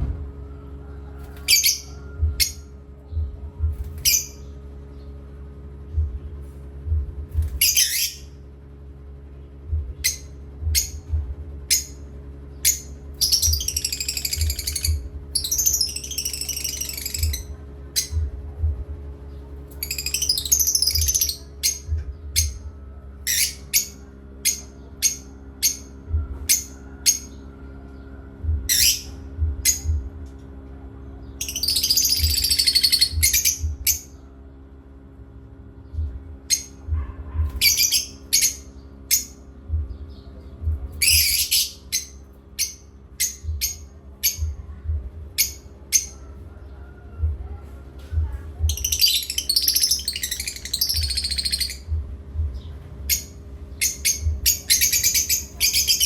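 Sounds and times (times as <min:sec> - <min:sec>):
steady low hum: 0:00.0 - 0:56.0
parrots chirping: 0:01.3 - 0:02.7, 0:07.5 - 0:08.3, 0:12.6 - 0:18.3, 0:19.8 - 0:22.6, 0:23.2 - 0:25.9, 0:28.7 - 0:29.9, 0:31.4 - 0:34.1, 0:36.5 - 0:39.4, 0:41.0 - 0:44.5, 0:48.6 - 0:52.0, 0:53.1 - 0:56.0.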